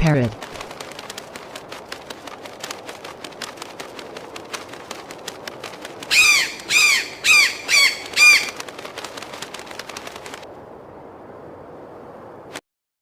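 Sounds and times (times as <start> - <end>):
macaw squawking: 6.1 - 8.6
quick clicks: 7.6 - 10.4.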